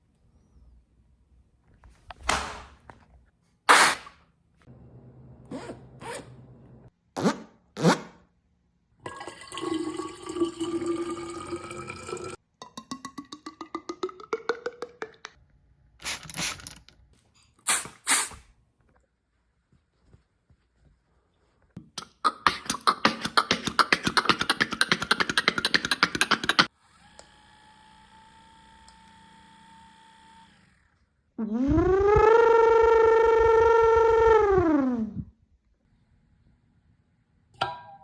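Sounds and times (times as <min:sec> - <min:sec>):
person making vocal sound effects: 0:21.8 - 0:26.7.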